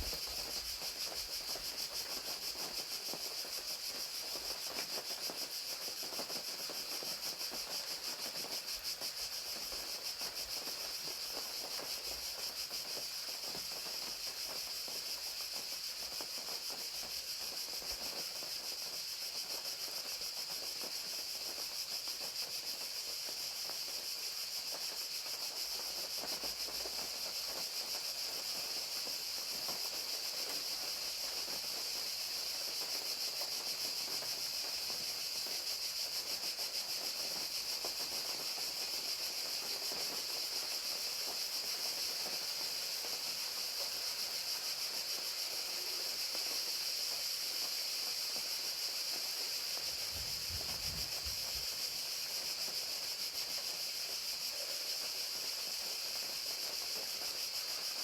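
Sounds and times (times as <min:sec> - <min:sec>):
crickets chirring: 0:00.0 - 0:58.0
rain falling: 0:37.1 - 0:46.8, 0:48.2 - 0:53.6.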